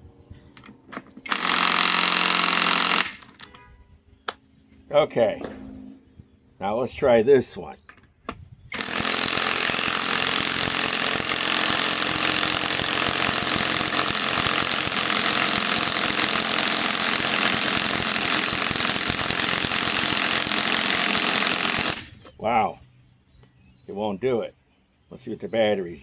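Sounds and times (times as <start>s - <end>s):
impact wrench hammering: 1.2s - 3.4s, 8.8s - 22.1s.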